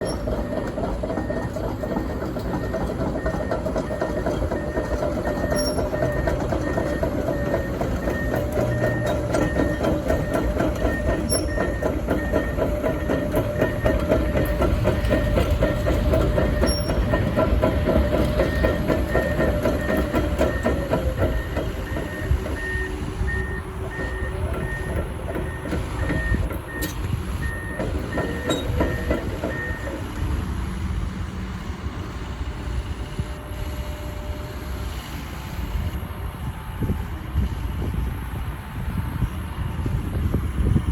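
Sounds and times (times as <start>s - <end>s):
travel alarm beeping: 0.0s - 30.2s
excavator engine rumble: 0.0s - 40.9s.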